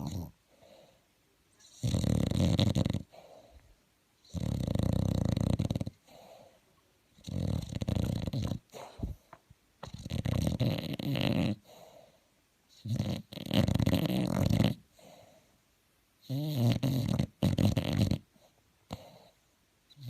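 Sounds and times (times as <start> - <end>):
dog snoring loudly: 0.0 - 0.9, 1.6 - 3.5, 4.2 - 6.6, 7.2 - 9.2, 9.8 - 12.1, 12.7 - 15.4, 16.2 - 20.0
dog breathing softly: 0.0 - 3.8, 4.4 - 13.2, 14.0 - 15.6, 17.9 - 19.6.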